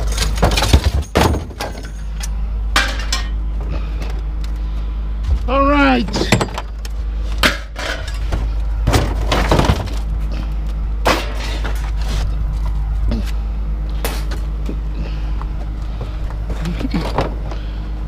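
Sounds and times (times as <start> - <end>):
scrap metal crashing and clattering: 0.0 - 2.2, 7.4 - 10.0, 11.0 - 12.1
low engine rumble: 0.0 - 18.0.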